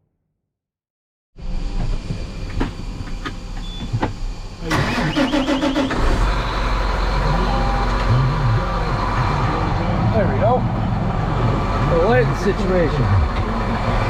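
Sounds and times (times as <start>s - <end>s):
tractor engine cranking and running: 4.6s - 9.4s.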